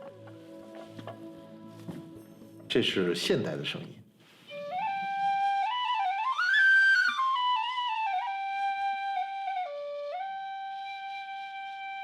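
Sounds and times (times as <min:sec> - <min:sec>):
flute melody: 0:00.0 - 0:02.7, 0:04.4 - 0:12.0.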